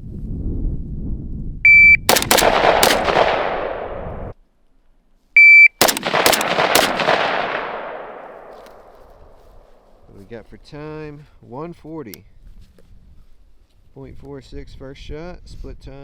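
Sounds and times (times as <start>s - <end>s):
shot timer beep: 1.7s - 2.1s, 5.4s - 5.8s
rifle shots ringing: 1.7s - 4.3s, 5.8s - 9.8s.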